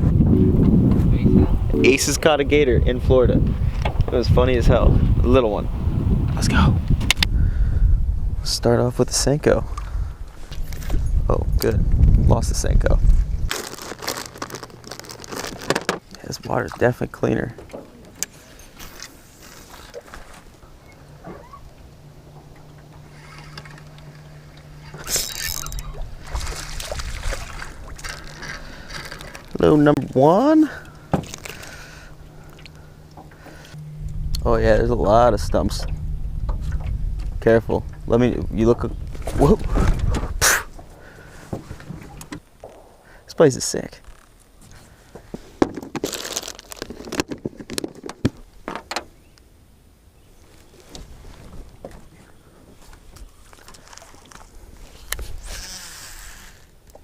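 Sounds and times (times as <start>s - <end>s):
low thumps: 0.0s - 7.2s, 31.0s - 43.3s
gear scraping and rustling: 13.5s - 16.1s, 17.8s - 30.2s, 30.8s - 34.3s
electric trolling motor humming: 20.5s - 29.6s, 30.8s - 41.5s, 55.3s - 57.0s.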